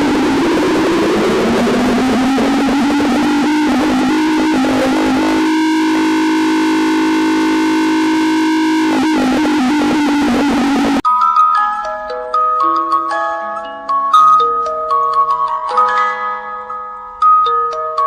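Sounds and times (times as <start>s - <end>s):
low siren tone: 0.0s - 11.0s.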